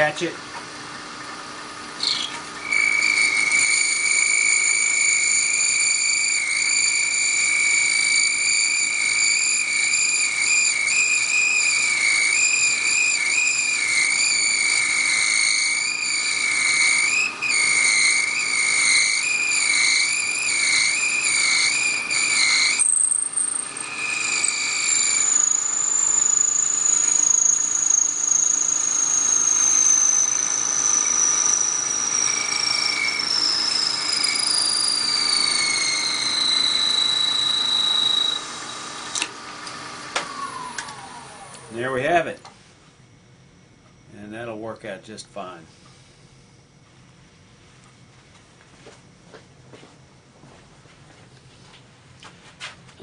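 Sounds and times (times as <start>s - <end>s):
lathe tool squealing on bone: 2.0s - 39.2s
high whine dropping in pitch: 21.7s - 39.2s.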